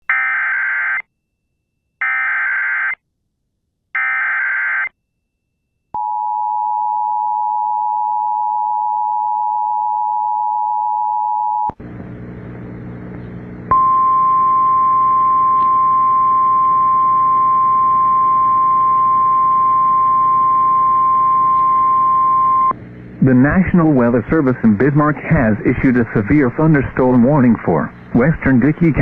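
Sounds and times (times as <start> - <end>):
low buzzing hum with hiss: 11.7 - 29.0.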